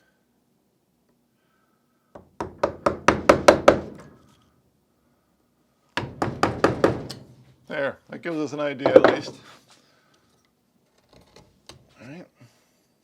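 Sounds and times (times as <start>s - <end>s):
mallet tapping a gouge: 8.9s - 9.3s.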